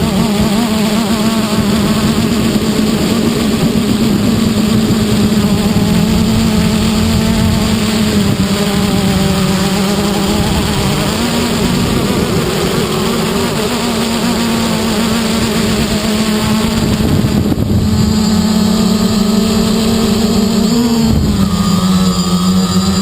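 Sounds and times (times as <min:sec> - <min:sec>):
quadcopter propellers buzzing: 0:00.0 - 0:23.0
wind noise on microphone: 0:00.0 - 0:23.0.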